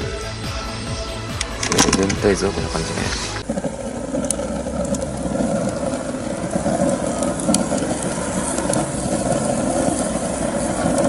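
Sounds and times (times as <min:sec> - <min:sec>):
stove fire rumbling: 0:01.1 - 0:11.0.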